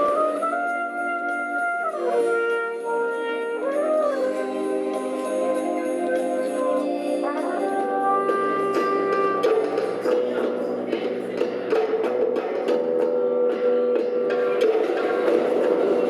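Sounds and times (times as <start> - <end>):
brass-like wind instrument melody: 0.0 - 11.0.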